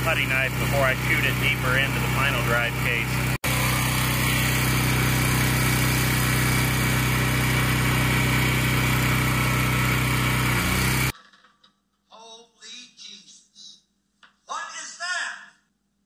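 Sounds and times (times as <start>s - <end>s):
pressure washer engine running: 0.0s - 11.1s.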